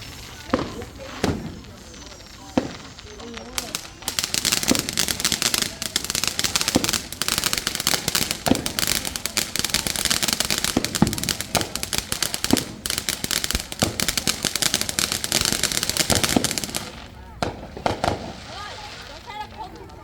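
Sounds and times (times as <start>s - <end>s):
deep firework pops: 0.0s - 20.0s
fireworks bangs and crackles: 0.0s - 20.0s.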